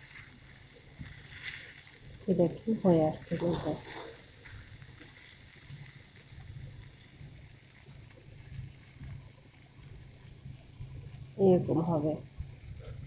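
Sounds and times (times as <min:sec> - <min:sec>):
food frying in oil: 0:00.0 - 0:13.0.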